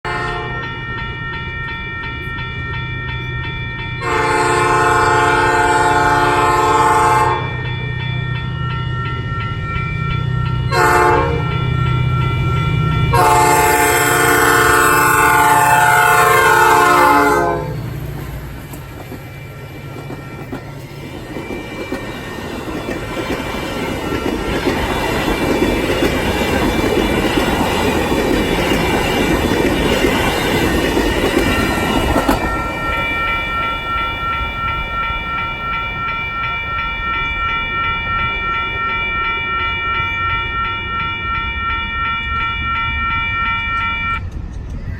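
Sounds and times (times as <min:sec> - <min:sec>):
train horn blasts: 0:00.0 - 0:00.7, 0:04.0 - 0:07.6, 0:10.7 - 0:11.5, 0:12.4 - 0:17.9, 0:39.6 - 0:44.2
train wheels rumbling and clacking: 0:00.1 - 0:44.9.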